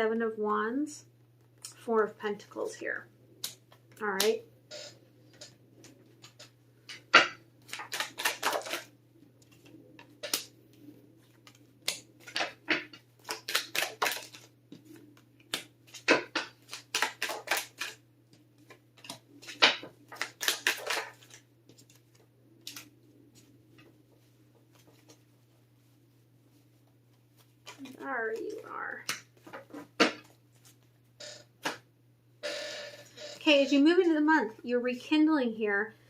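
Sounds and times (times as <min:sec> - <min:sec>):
cards being shuffled: 0:03.3 - 0:31.0, 0:31.6 - 0:31.8
card snaps: 0:07.2 - 0:08.9, 0:15.4 - 0:18.0.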